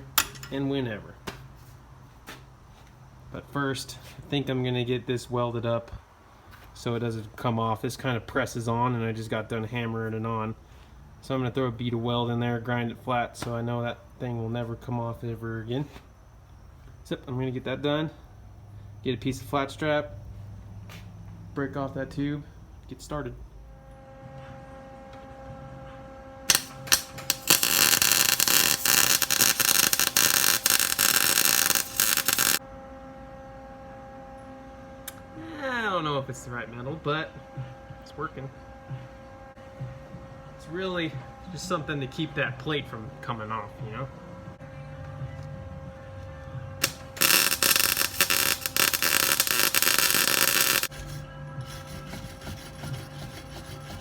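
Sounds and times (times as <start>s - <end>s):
arc welder crackling: 0.0s - 0.6s, 26.5s - 32.6s, 46.8s - 54.0s.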